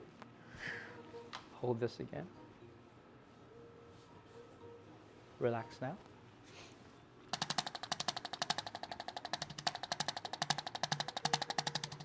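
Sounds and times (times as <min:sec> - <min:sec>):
adjusting instrument clicking: 0:07.4 - 0:12.0.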